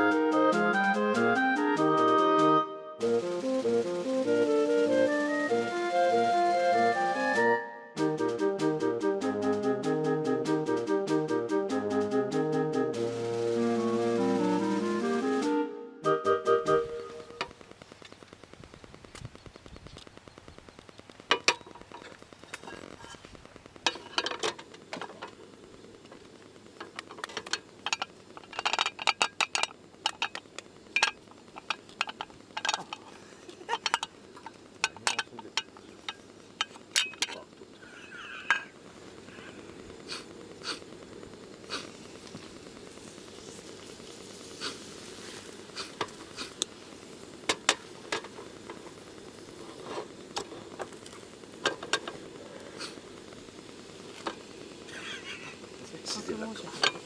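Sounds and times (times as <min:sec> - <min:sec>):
cookware and utensils clinking: 0:23.9 - 0:25.4, 0:26.8 - 0:33.1, 0:33.7 - 0:38.8, 0:56.8 - 0:57.0.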